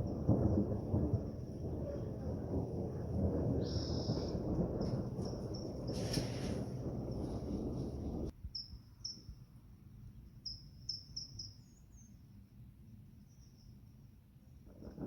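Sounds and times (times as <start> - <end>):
low rumble: 0.0 - 8.3
faint high-pitched chirps: 8.4 - 9.4, 10.4 - 12.4.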